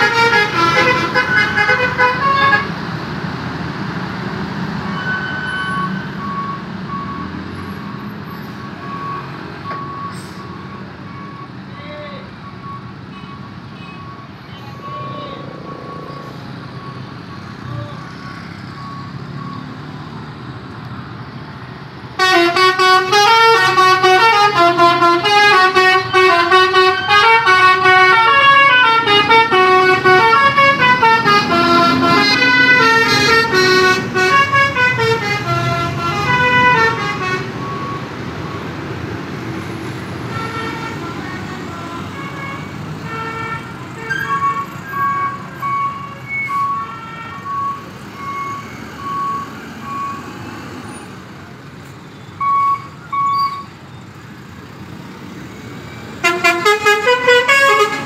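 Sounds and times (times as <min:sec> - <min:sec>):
multi-tone bus air horns melody: 0:00.0 - 0:02.8, 0:22.2 - 0:38.0, 0:40.3 - 0:47.8, 0:56.2 - 0:58.0.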